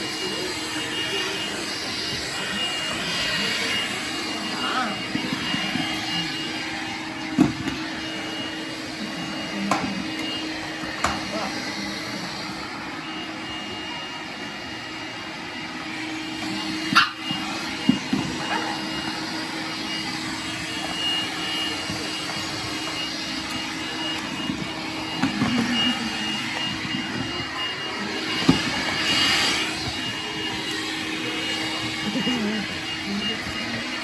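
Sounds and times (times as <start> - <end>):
vacuum cleaner motor humming: 0.0 - 34.0
puppy barking: 16.8 - 17.4, 18.3 - 19.0.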